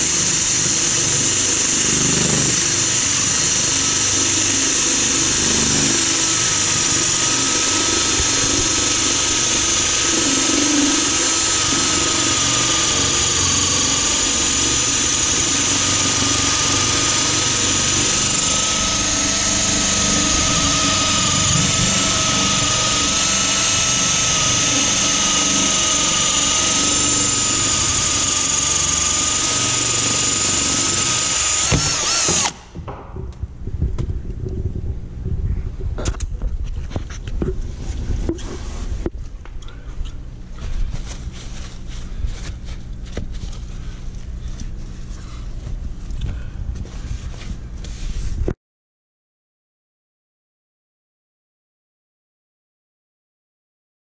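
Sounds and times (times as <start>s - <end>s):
power drill cutting into stone: 0.0s - 32.7s.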